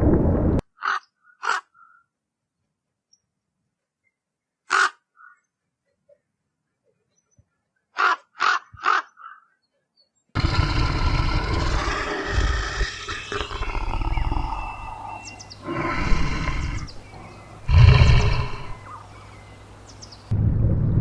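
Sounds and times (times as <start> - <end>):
large animal rough calls: 10.4 - 19.4
harsh bird calls: 10.4 - 20.3.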